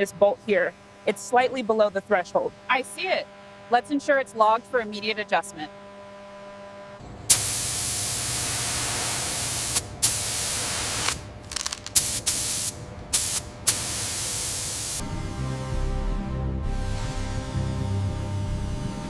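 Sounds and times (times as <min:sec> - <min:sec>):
hissing spray blasts: 0:07.3 - 0:15.0.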